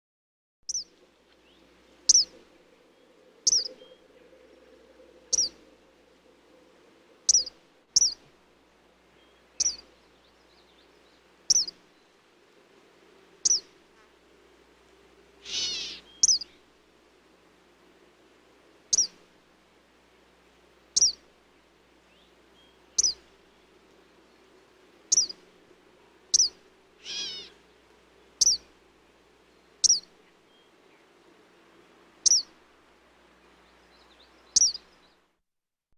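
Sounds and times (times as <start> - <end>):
bird calling sharp notes: 1.5 - 11.9, 13.4 - 14.2, 15.4 - 16.6, 18.9 - 19.2, 21.0 - 21.2, 22.4 - 23.8, 25.1 - 25.5, 26.3 - 28.8, 29.7 - 30.5, 32.2 - 32.6, 34.1 - 35.0
bird sputtering chatter: 2.1 - 2.5, 3.4 - 6.6, 7.2 - 8.2, 9.6 - 9.9, 11.5 - 11.8, 13.4 - 13.7, 15.4 - 16.5, 18.9 - 19.2, 21.0 - 21.2, 23.0 - 23.2, 25.1 - 25.4, 26.3 - 27.6, 28.4 - 28.7, 29.8 - 30.1, 32.2 - 32.5, 34.6 - 34.8.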